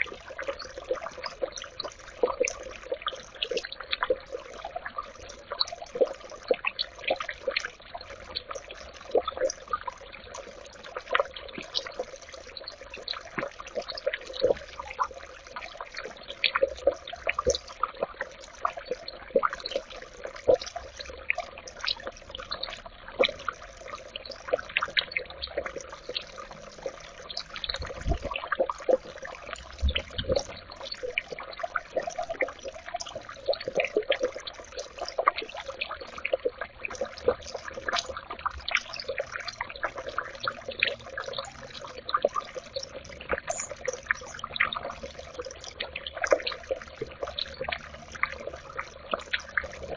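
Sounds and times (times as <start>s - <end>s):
fountain water trickling: 0.0s - 49.9s
water dripping: 0.0s - 49.9s.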